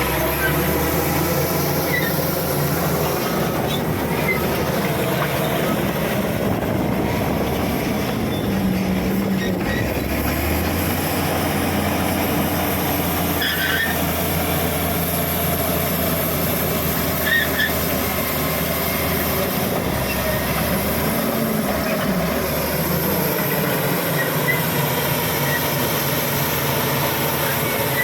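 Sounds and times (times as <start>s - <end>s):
bulldozer diesel engine running: 0.0s - 28.0s
high squeaks: 1.8s - 2.3s, 13.4s - 14.0s.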